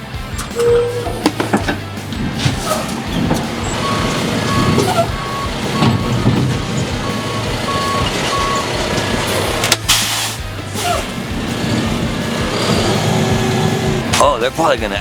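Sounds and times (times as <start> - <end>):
truck back-up alarm beeping: 0.0 - 14.8
truck engine running: 0.0 - 15.0.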